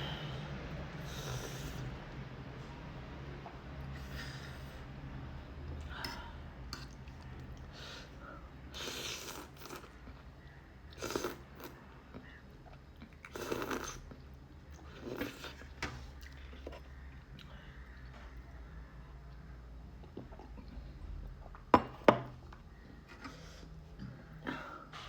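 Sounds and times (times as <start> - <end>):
person chewing and crunching noodles: 8.7 - 17.9.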